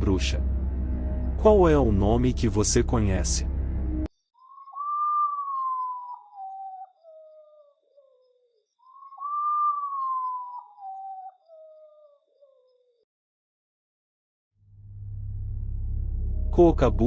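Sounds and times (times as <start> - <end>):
bird whistled song: 4.4 - 12.8.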